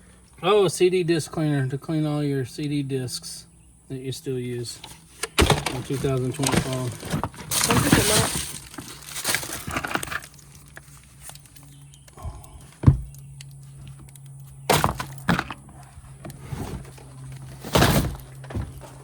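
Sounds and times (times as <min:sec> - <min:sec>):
faint low hum: 0:00.0 - 0:19.0
objects rustling and clattering: 0:04.7 - 0:19.0.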